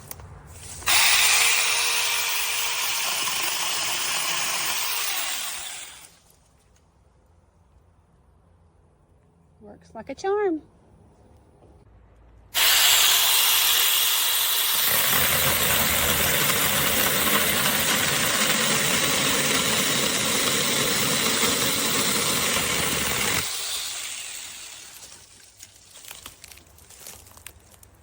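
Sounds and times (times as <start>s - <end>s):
electric chainsaw whining: 0.8s - 6.2s, 12.6s - 25.4s.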